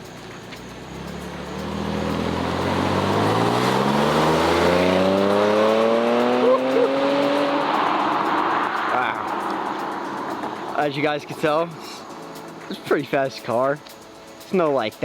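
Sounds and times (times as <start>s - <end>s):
car engine accelerating hard: 0.5s - 10.7s.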